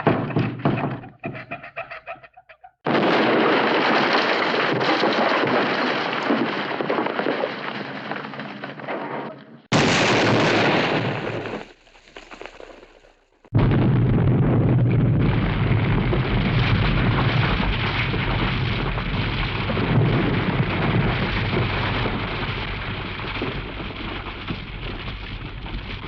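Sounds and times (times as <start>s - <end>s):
cartoon explosions: 2.8s - 11.8s, 13.5s - 23.9s.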